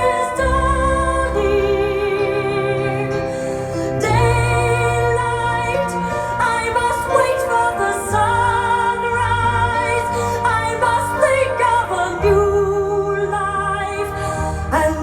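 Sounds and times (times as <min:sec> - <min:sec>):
woman singing slow melody: 0:03.9 - 0:15.0.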